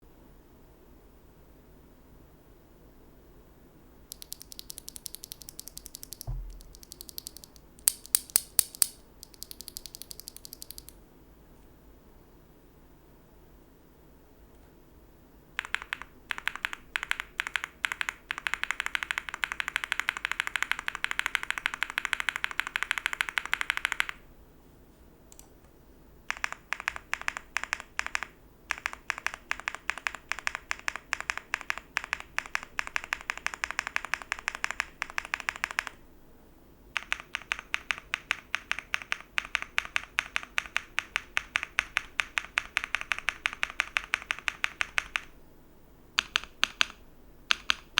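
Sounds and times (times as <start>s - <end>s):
mechanical keyboard typing: 4.1s - 11.0s, 15.6s - 24.2s, 26.3s - 36.0s, 37.0s - 45.4s, 46.2s - 47.9s.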